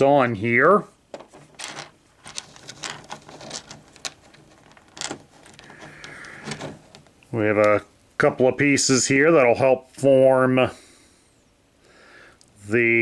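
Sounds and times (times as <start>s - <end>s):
plastic parts clicking and tapping: 1.1s - 7.2s.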